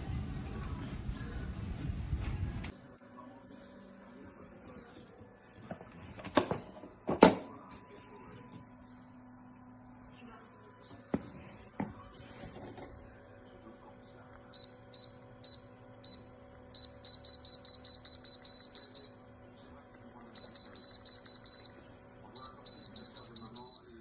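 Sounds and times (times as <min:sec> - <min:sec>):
high electronic beeps: 0:22.4 - 0:24.0.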